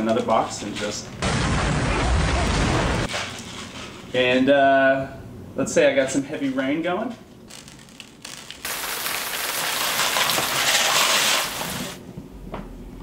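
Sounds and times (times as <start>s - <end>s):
candy patter like heavy rain: 8.2s - 12.0s.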